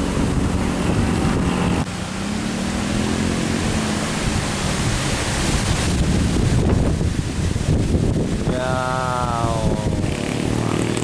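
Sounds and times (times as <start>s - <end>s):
truck engine passing: 0.0s - 6.6s, 9.0s - 11.0s
tyre and wind noise: 0.0s - 11.0s.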